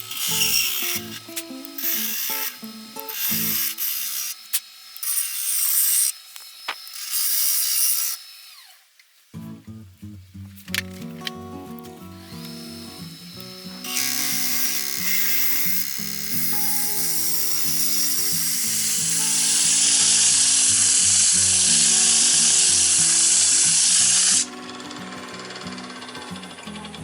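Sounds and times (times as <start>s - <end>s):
lathe tool cutting wood hiss: 0.0s - 8.7s, 12.2s - 27.0s
background music: 10.8s - 20.4s, 21.2s - 27.0s.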